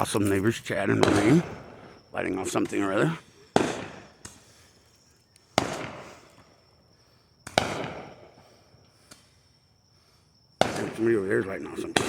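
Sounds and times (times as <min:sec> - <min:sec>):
firework explosions echoing: 0:00.8 - 0:04.7, 0:05.4 - 0:06.8, 0:07.4 - 0:09.4, 0:10.6 - 0:12.0.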